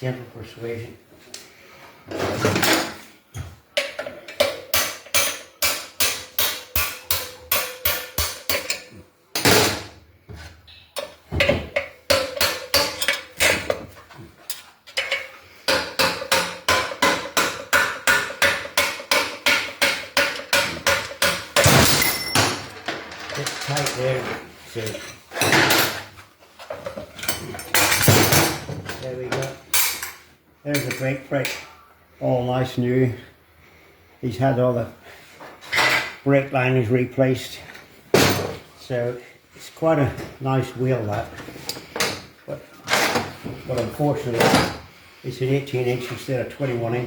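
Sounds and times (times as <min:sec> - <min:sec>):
hammer striking metal: 0:04.4 - 0:09.8, 0:15.7 - 0:22.7.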